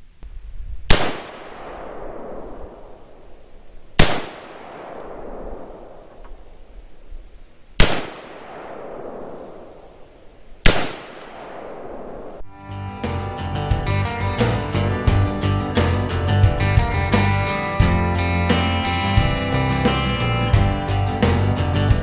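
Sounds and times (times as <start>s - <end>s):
long gunshot echo: 0.9s - 3.2s, 4.0s - 6.3s, 7.8s - 10.0s, 10.6s - 12.4s
rifle shots: 0.9s - 3.4s, 4.0s - 6.6s, 7.8s - 12.4s.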